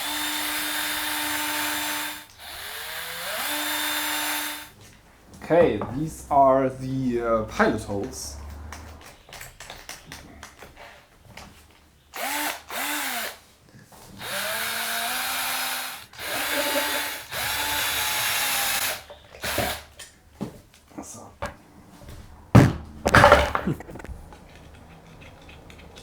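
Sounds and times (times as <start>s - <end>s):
electric drill boring into plastic: 0.0s - 4.7s, 12.2s - 13.4s, 14.2s - 19.9s.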